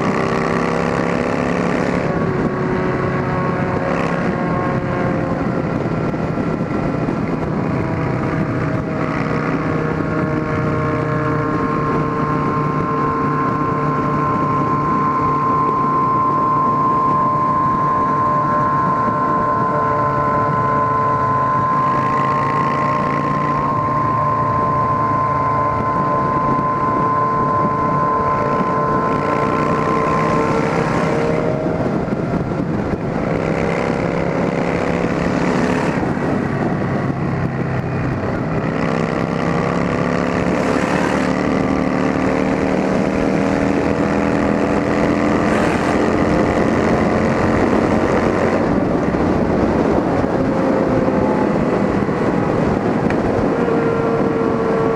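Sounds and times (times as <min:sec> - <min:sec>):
motorcycle engines: 0:00.0 - 0:54.9
wind buffeting microphone: 0:00.0 - 0:54.9.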